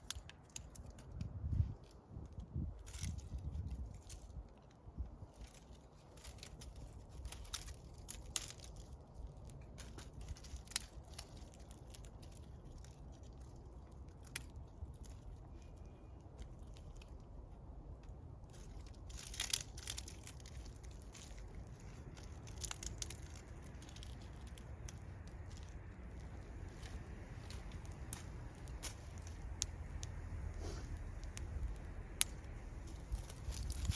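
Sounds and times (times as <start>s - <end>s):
low fire rumble: 17.0s - 33.9s
campfire crackling and popping: 19.1s - 33.9s.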